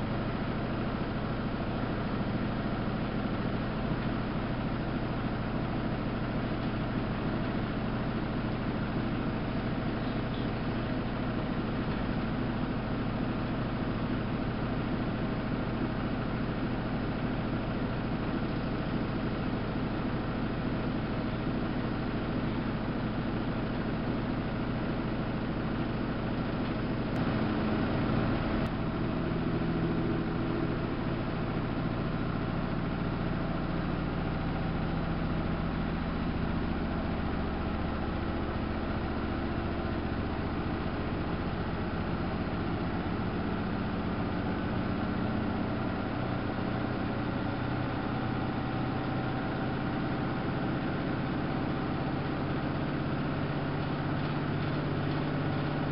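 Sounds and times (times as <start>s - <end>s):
washing machine humming: 0.0s - 55.9s.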